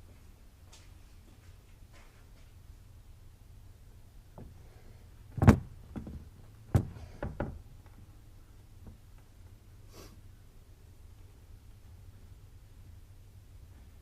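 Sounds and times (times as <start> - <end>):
sharp knocks and thuds: 5.3 - 7.7.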